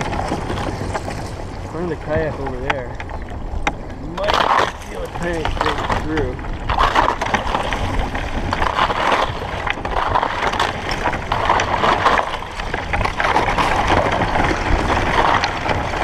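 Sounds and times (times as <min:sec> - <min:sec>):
ice scraping on hull: 0:00.0 - 0:03.3, 0:03.9 - 0:16.0
paddle strokes in water: 0:00.0 - 0:16.0
steady low rumble: 0:00.0 - 0:16.0.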